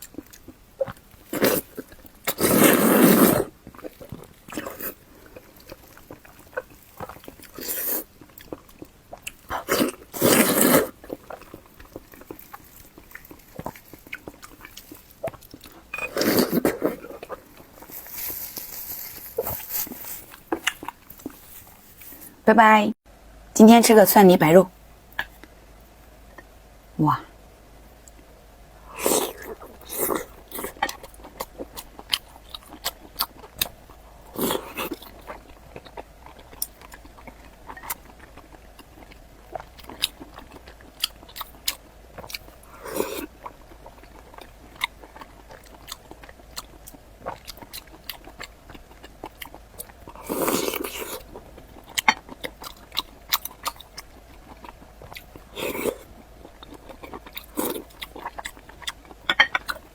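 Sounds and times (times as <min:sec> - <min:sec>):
close-miked chewing: 0:00.0 - 0:22.3, 0:28.9 - 0:59.9
bites or slurps: 0:00.8 - 0:05.0, 0:09.1 - 0:11.5.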